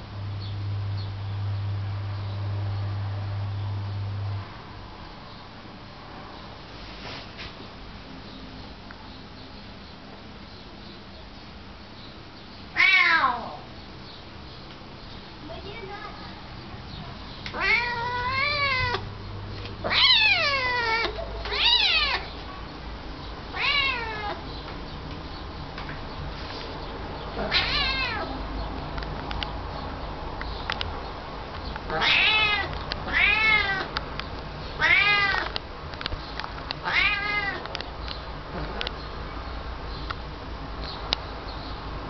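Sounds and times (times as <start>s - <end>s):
cat meowing: 12.7s - 13.6s, 17.4s - 19.0s, 19.8s - 22.3s, 23.5s - 24.4s, 27.4s - 28.4s, 31.9s - 33.9s, 34.8s - 35.6s, 36.8s - 37.7s.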